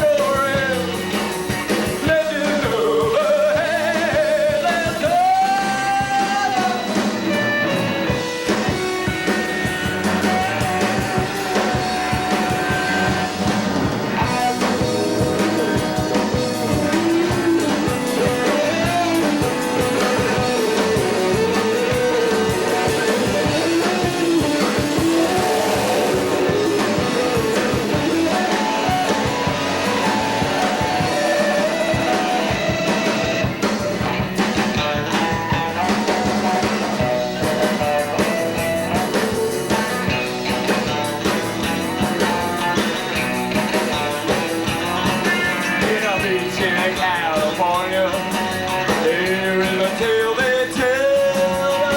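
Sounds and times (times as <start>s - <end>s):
rock band instrumental: 0.0s - 51.9s
gliding guitar melody: 5.1s - 51.9s.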